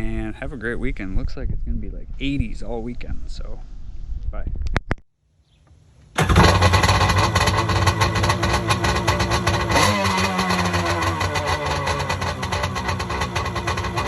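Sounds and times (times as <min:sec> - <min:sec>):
loud engine running: 0:06.2 - 0:14.0.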